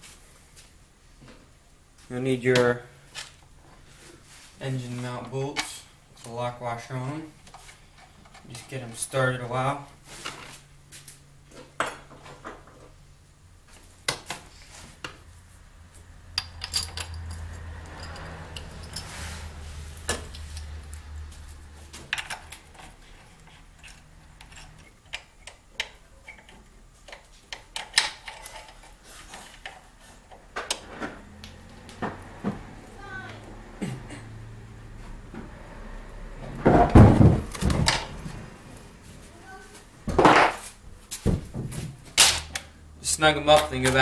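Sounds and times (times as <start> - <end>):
metal bolts clinking: 16.3 - 19.2, 22.1 - 29.8.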